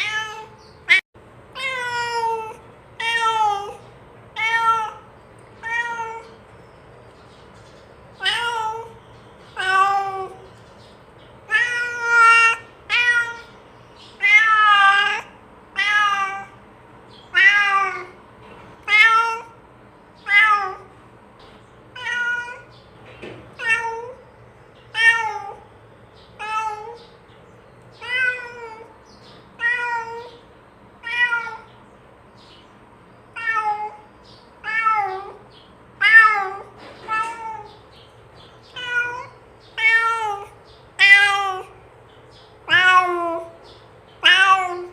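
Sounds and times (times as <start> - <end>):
cat meowing: 0.0 - 6.4, 8.2 - 10.5, 11.5 - 13.6, 14.2 - 16.6, 17.3 - 18.2, 18.8 - 19.6, 20.2 - 20.9, 21.9 - 22.7, 23.5 - 24.2, 24.9 - 25.7, 26.4 - 27.2, 28.0 - 28.9, 29.6 - 31.8, 33.3 - 37.9, 38.7 - 41.8, 42.6 - 43.6, 44.2 - 44.9.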